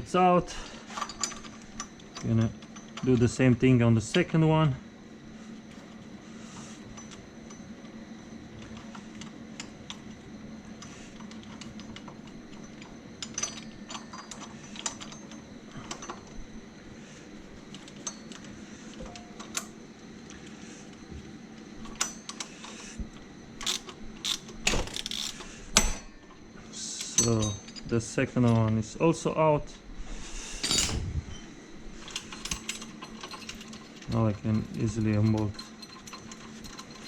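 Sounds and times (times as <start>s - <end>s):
hand tools clinking on metal: 26.8s - 28.8s, 32.1s - 37.0s.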